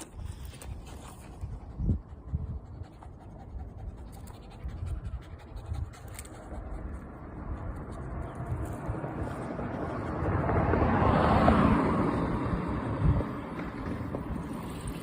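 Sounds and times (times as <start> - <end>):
wind rumble on microphone: 0.0 - 15.0
car passing by: 7.1 - 15.0.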